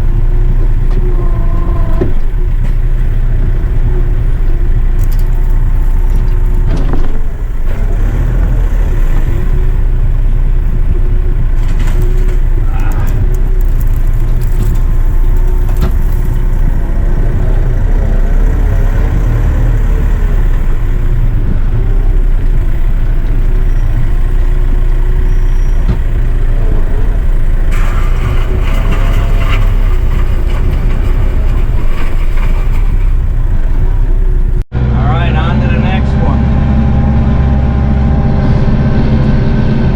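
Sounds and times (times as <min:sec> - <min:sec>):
tractor diesel engine running: 0:00.0 - 0:39.9
sharp cracks: 0:11.5 - 0:16.7.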